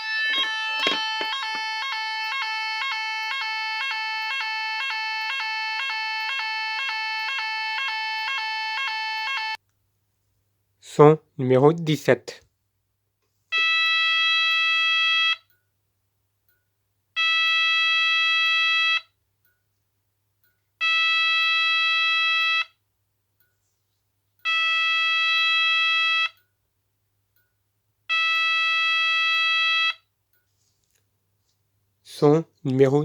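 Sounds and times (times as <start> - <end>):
pulsing fire alarm tone: 0.0 - 9.6.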